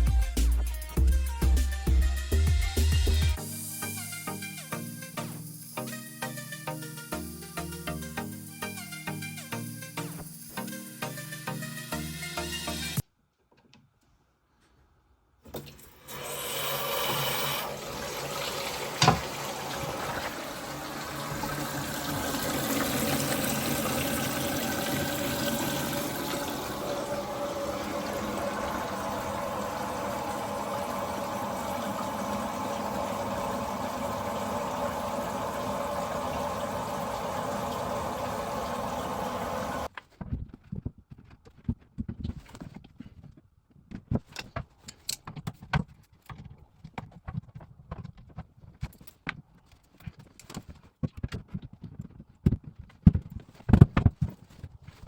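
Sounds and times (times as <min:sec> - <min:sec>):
toilet flushing and cistern refilling: 0:15.5 - 0:39.9.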